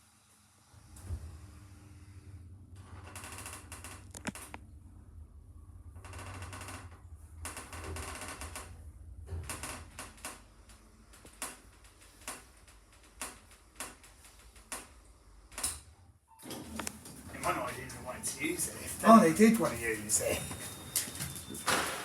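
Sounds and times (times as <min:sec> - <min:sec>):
lift machinery humming: 0:16.4 - 0:22.0.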